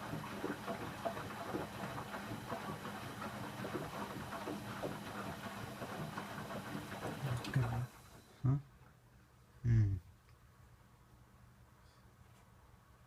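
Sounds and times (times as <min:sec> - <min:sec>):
water swishing in washing machine: 0:00.0 - 0:08.3.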